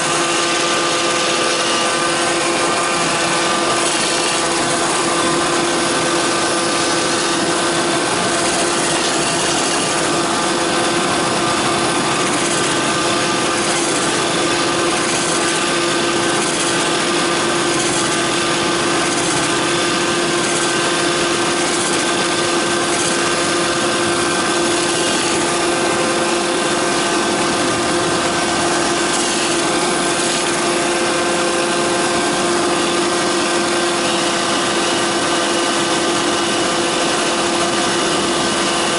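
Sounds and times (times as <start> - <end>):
robot vacuum running: 0.0 - 38.9.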